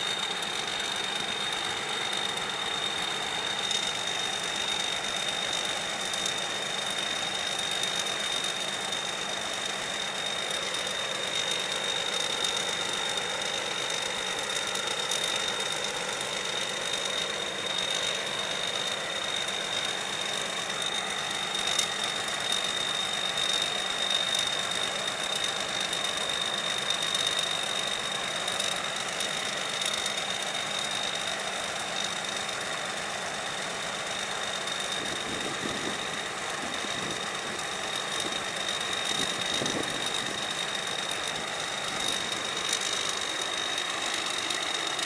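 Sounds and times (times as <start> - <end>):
combine harvester running: 0.0 - 45.0
high-pitched machinery whine: 0.0 - 45.0.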